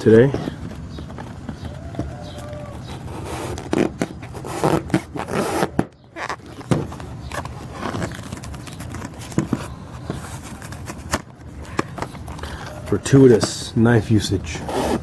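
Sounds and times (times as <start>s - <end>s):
knife scraping through packaging: 14.6s - 15.0s.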